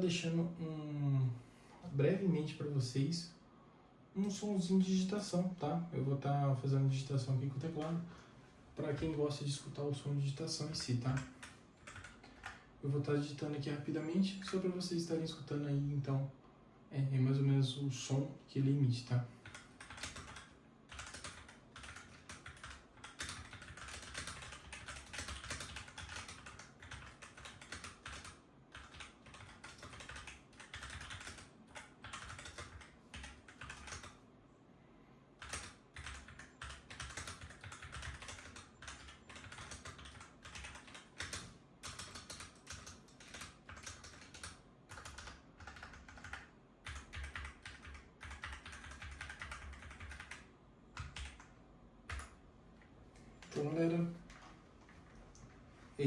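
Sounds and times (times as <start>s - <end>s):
fast mechanical keyboard typing: 7.5s - 8.0s, 8.8s - 14.9s, 19.4s - 34.2s, 35.4s - 52.4s.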